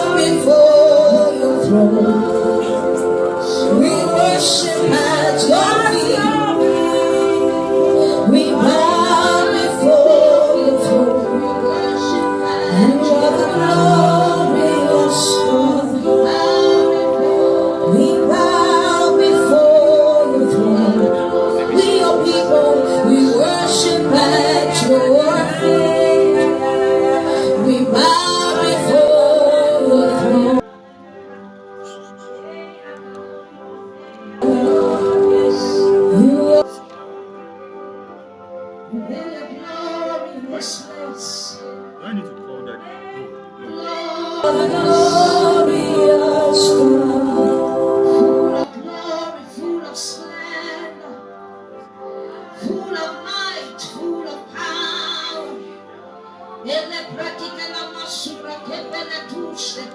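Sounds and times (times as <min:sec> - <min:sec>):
voices singing worship music: 0:00.0 - 0:59.9.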